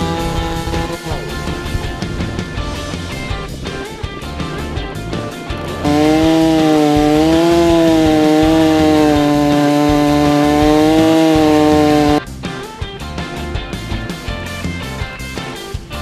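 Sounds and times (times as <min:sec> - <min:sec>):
chainsaw running at high revs: 0:00.0 - 0:02.3, 0:05.2 - 0:12.2.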